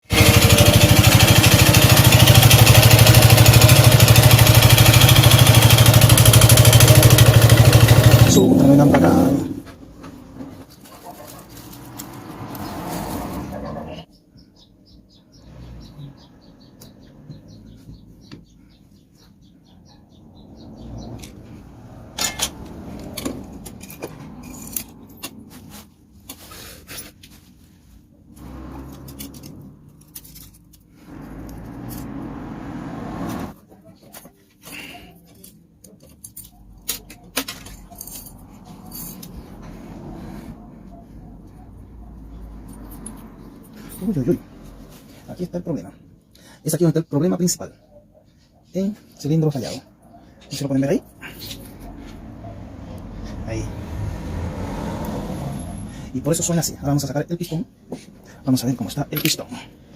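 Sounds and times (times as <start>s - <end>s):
motorcycle engine idling: 0.1s - 8.5s
metal tools clinking on engine: 22.1s - 25.5s, 35.0s - 39.6s, 58.7s - 59.7s.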